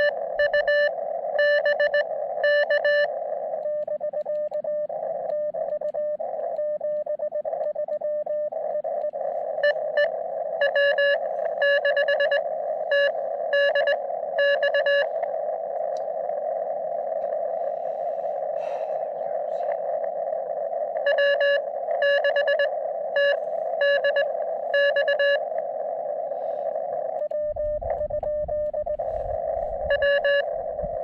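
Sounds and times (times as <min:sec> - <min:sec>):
morse code beeping: 0:00.0 - 0:03.1, 0:03.7 - 0:15.1, 0:21.0 - 0:25.5, 0:27.2 - 0:31.0
receiver hiss: 0:00.0 - 0:31.0
harsh keyed tone: 0:26.7 - 0:31.0.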